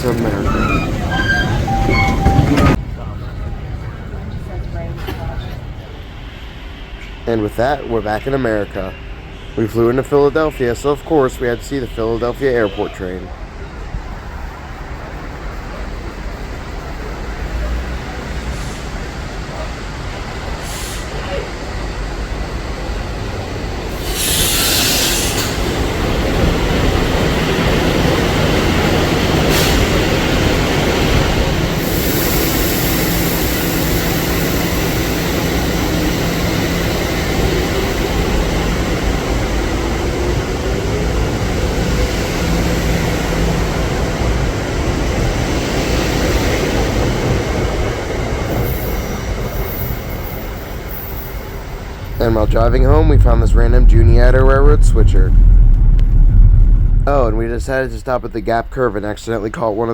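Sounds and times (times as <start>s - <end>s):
wheel squeal: 0.0s - 2.8s
train rumbling on rails: 0.0s - 59.9s.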